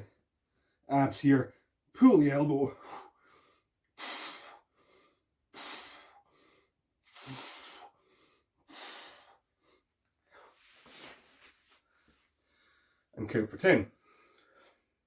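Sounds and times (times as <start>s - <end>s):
man breathing hard: 2.7s - 13.1s, 13.9s - 15.0s.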